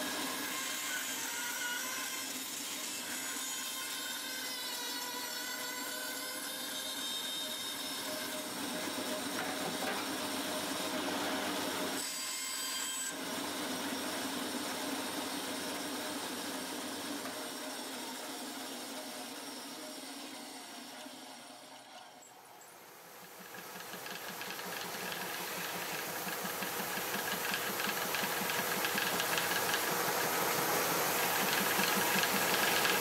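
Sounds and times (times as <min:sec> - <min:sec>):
woodworking power tool running: 0:22.8 - 0:33.0.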